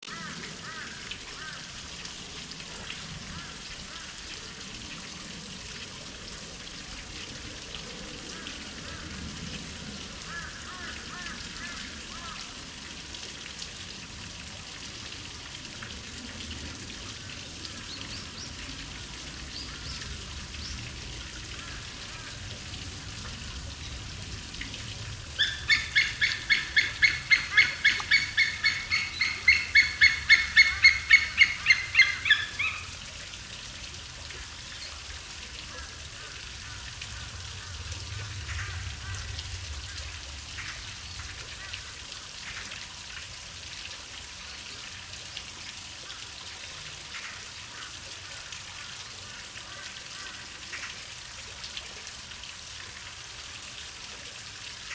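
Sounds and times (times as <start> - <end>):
eagle yelping calls: 25.4 - 33.0.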